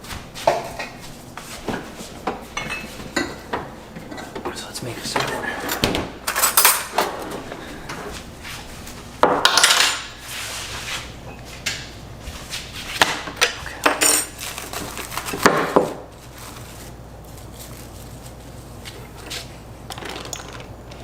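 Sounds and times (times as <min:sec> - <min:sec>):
dishes and cutlery clattering: 0:02.4 - 0:07.2, 0:13.4 - 0:14.4.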